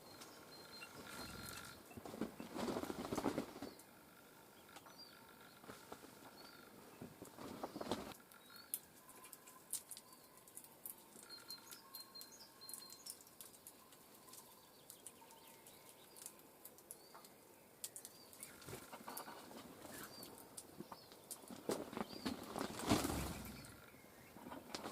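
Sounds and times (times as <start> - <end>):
small birds chirping: 0.0 - 24.9.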